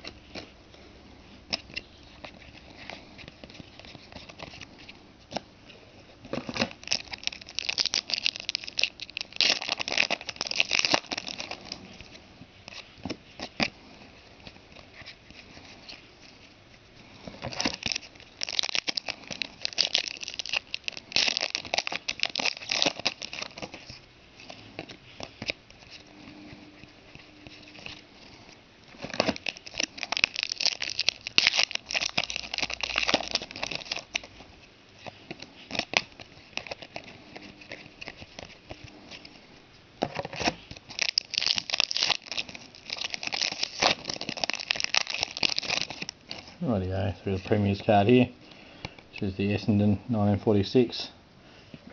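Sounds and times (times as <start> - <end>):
cards rustling: 1.3 - 49.7
card packs tearing and crinkling: 6.3 - 12.1, 17.2 - 26.0, 28.9 - 39.2, 40.1 - 46.7.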